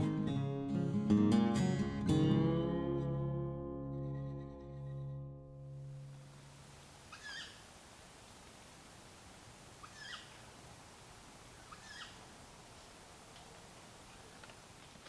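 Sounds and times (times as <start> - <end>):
background hiss: 5.7 - 15.0
short sharp animal calls: 7.1 - 7.7, 9.8 - 10.5, 11.6 - 12.3.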